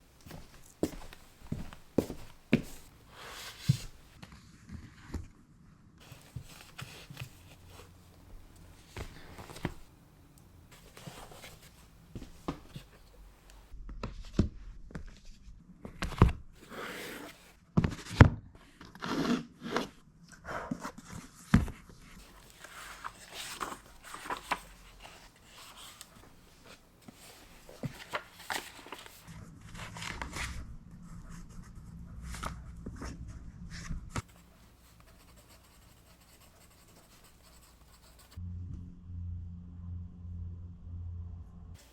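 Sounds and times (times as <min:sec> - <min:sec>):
rustling: 0:06.0 - 0:09.9, 0:10.7 - 0:13.7, 0:22.2 - 0:30.7.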